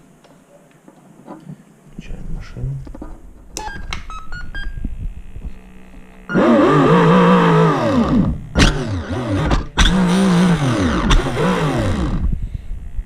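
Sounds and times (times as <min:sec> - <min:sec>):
electric motor whining: 0:04.5 - 0:13.0.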